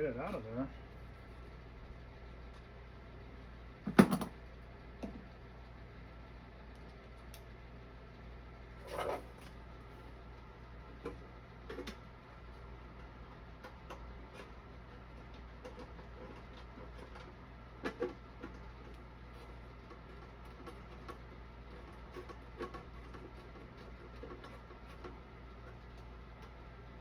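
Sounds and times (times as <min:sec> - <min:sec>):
steady low hum: 0:00.0 - 0:27.0.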